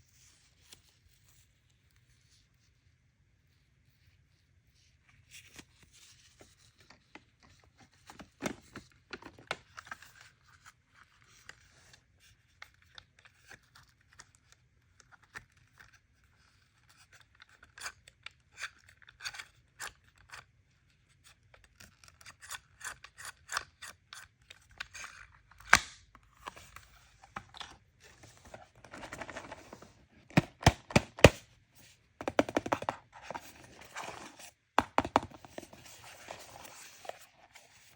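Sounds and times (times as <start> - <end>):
packaging clicks and scrapes: 26.3 - 37.9.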